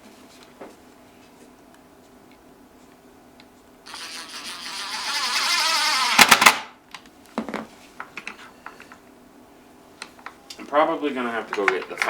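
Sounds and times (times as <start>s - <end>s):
cordless drill motor buzzing: 3.9s - 6.7s.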